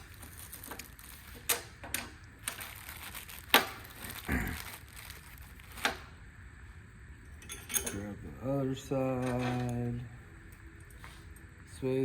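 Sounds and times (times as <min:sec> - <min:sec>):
metal hardware clinking: 0:07.3 - 0:08.2.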